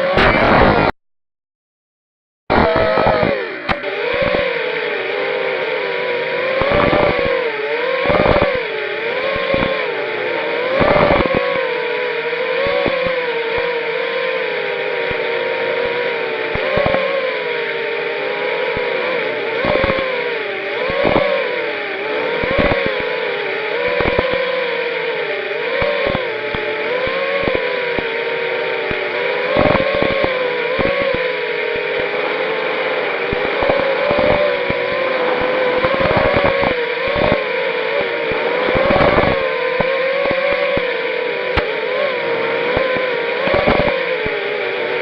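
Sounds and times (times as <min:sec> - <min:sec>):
quadcopter motors whining: 0:00.0 - 0:00.9, 0:02.5 - 0:45.0
crackling clicks: 0:02.5 - 0:04.5, 0:06.5 - 0:07.4, 0:08.0 - 0:08.6, 0:09.2 - 0:09.9, 0:10.7 - 0:11.6, 0:12.6 - 0:13.7, 0:15.8 - 0:17.1, 0:19.6 - 0:20.1, 0:20.9 - 0:21.4, 0:22.4 - 0:23.1, 0:23.8 - 0:24.6, 0:25.8 - 0:28.2, 0:28.8 - 0:31.3, 0:33.2 - 0:41.7, 0:42.7 - 0:44.4.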